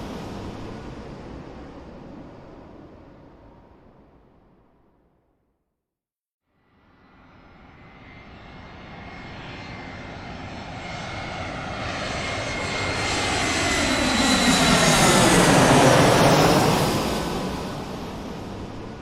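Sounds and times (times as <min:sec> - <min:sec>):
airplane engine noise: 0:00.0 - 0:04.6, 0:07.1 - 0:19.0.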